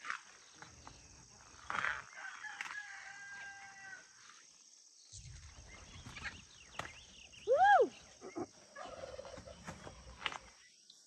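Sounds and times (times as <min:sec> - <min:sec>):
high insect drone: 0:00.0 - 0:11.0
rooster crowing: 0:02.1 - 0:04.1.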